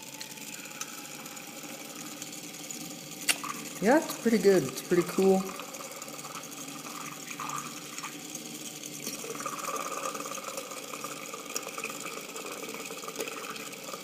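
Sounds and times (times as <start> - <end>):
small electric motor whirring: 0.0 - 14.0
water churning: 3.1 - 14.0.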